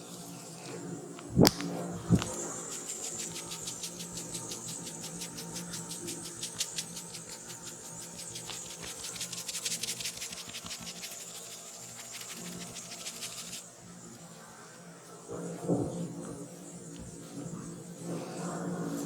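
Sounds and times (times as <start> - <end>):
massage tool ticking on scalp: 1.5 - 13.6.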